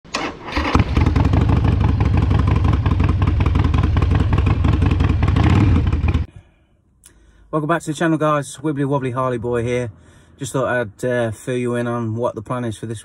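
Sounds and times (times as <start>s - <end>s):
motorcycle engine running: 0.8s - 6.3s.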